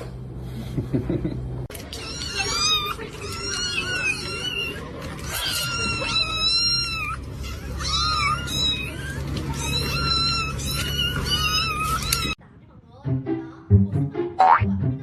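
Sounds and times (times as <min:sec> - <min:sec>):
cat meowing: 0:01.8 - 0:12.4.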